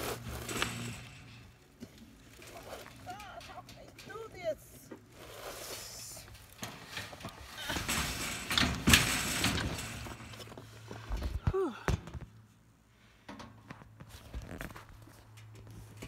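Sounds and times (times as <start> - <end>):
person grunting with effort: 11.4 - 12.0.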